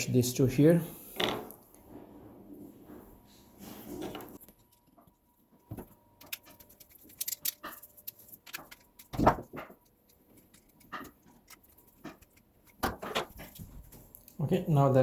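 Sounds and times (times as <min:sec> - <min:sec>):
clicks and taps fastening wires: 0:05.7 - 0:14.4.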